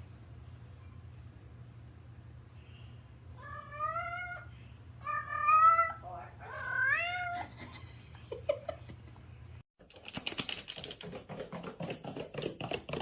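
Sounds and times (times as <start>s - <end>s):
cat meowing: 3.4s - 7.4s.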